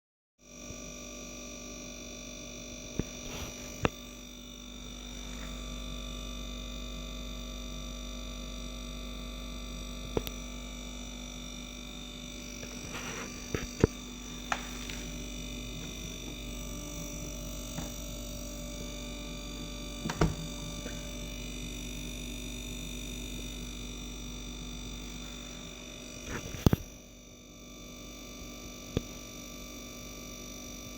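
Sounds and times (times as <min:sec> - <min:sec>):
dishwasher humming: 0:12.6 - 0:21.6.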